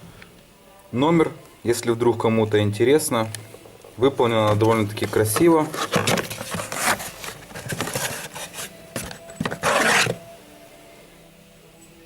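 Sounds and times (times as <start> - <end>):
packaging rubbing and scraping: 4.2 - 10.3.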